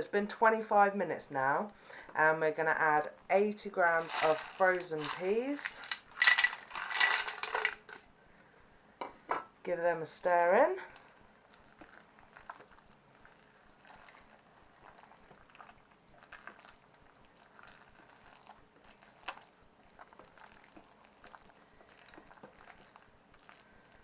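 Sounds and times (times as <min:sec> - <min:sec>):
soft wet squelching: 0:10.9 - 0:24.0.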